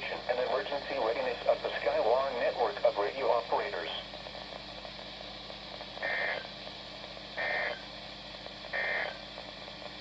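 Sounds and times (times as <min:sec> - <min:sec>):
faint radio hiss: 0:00.0 - 0:04.7.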